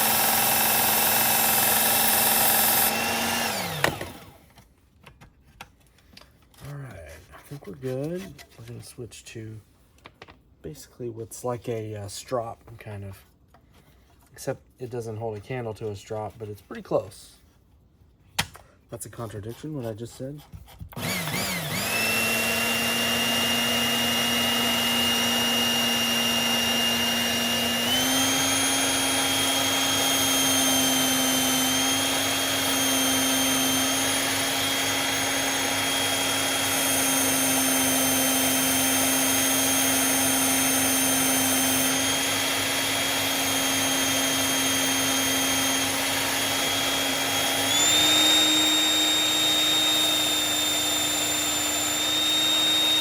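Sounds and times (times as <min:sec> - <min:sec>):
blade being honed: 0:00.0 - 0:04.2, 0:20.9 - 0:53.0
knife sharpener motor whining: 0:00.0 - 0:04.4, 0:21.0 - 0:53.0.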